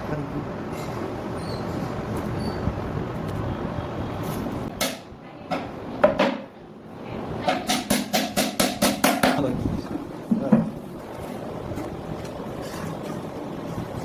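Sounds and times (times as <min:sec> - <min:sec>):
wood knocking on wood: 0:07.5 - 0:10.8.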